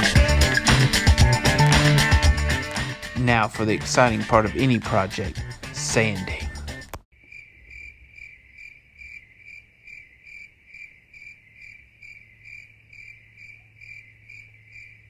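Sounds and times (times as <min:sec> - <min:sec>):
crickets chirping: 0:07.2 - 0:15.0.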